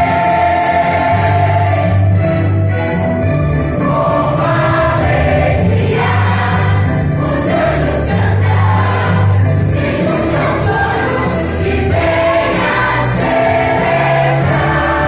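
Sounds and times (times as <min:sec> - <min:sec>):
church choir singing: 0:00.0 - 0:02.6, 0:03.2 - 0:15.0
instrumental accompaniment: 0:00.0 - 0:15.0
steady bass line: 0:00.0 - 0:15.0.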